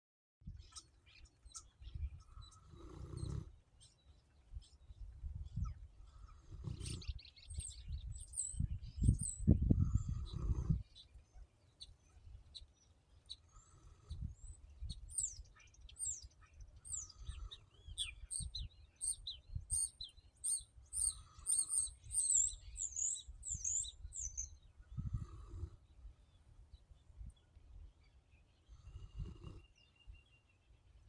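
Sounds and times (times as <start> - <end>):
small birds chirping: 0.4 - 31.0
dog snoring quietly: 2.5 - 3.6, 6.1 - 7.2, 9.9 - 10.8, 25.0 - 25.8, 28.7 - 29.8.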